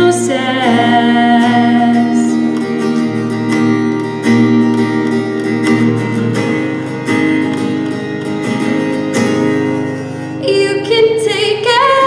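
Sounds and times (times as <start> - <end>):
person singing: 0.0 - 2.8, 10.4 - 12.0
strummed guitar chords: 0.0 - 12.0.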